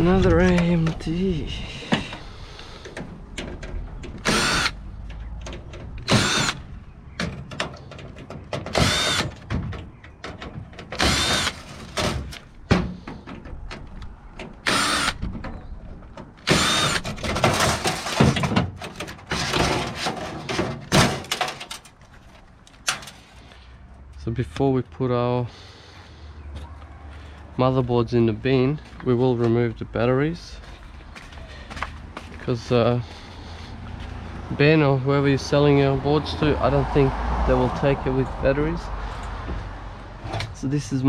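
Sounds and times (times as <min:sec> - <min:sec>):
power drill bursts: 0:04.2 - 0:04.8, 0:06.1 - 0:06.6, 0:08.7 - 0:09.3, 0:11.0 - 0:11.8, 0:14.6 - 0:15.2, 0:16.4 - 0:17.0.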